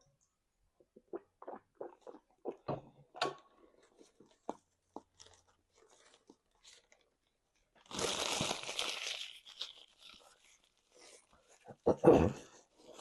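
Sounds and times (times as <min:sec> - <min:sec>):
person chewing food: 0:01.0 - 0:02.7, 0:03.9 - 0:06.8.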